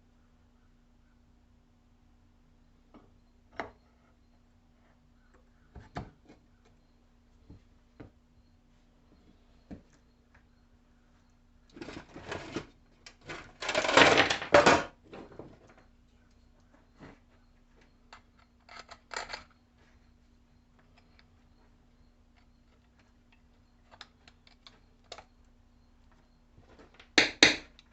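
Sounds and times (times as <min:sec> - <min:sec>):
faint steady hum: 0:00.0 - 0:27.9
tools clattering and rattling: 0:11.8 - 0:15.9, 0:17.8 - 0:20.0.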